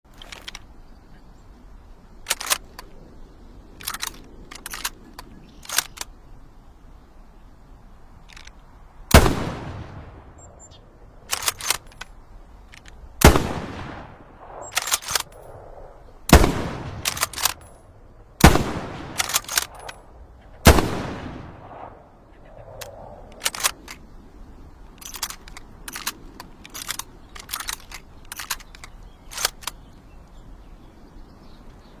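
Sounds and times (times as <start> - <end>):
rifle bolt clicks: 2.2 - 2.9, 3.8 - 6.1, 11.3 - 13.0, 14.6 - 15.6, 16.4 - 17.8, 18.4 - 20.0, 22.6 - 24.0, 25.0 - 29.8
rifle shots: 9.1 - 10.3, 13.2 - 15.3, 16.3 - 17.7, 18.4 - 20.0, 20.6 - 22.0.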